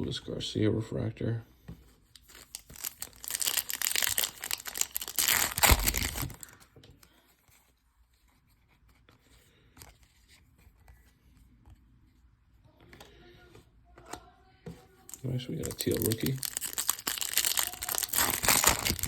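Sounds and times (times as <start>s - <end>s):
foil wrapper tearing and crinkling: 2.2s - 6.6s, 15.1s - 19.0s.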